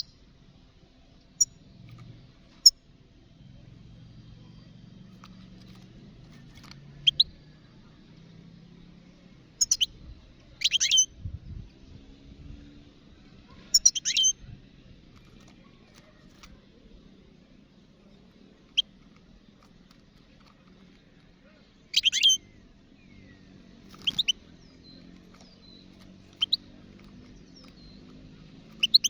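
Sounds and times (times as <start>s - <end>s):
goldfinch twittering: 9.6s - 9.9s, 10.6s - 11.1s, 13.7s - 14.3s, 21.9s - 22.4s, 24.0s - 24.4s, 25.3s - 26.7s, 28.7s - 29.0s.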